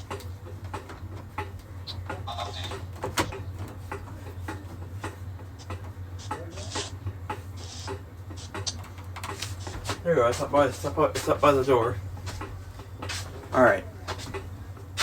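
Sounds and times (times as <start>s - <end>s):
steady low hum: 0.0s - 15.0s
footsteps: 7.6s - 11.5s, 12.2s - 13.5s.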